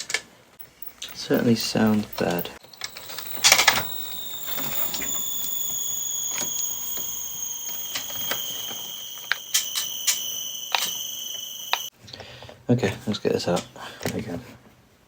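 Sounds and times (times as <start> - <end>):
cassette deck high whine: 0.6 - 11.9
clicks: 0.6 - 11.9.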